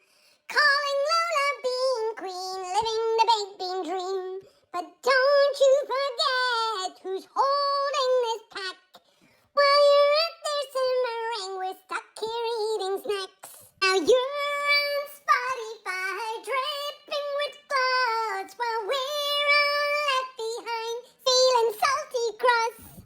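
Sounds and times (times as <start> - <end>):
short breaths: 0.0 - 0.5, 9.0 - 9.6
high voice singing unaccompanied: 0.4 - 23.0.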